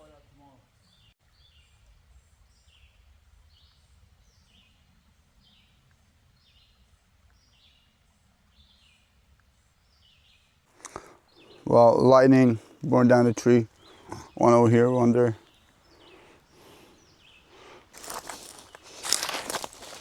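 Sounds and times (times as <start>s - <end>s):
faint bird calling: 12.5s - 20.0s.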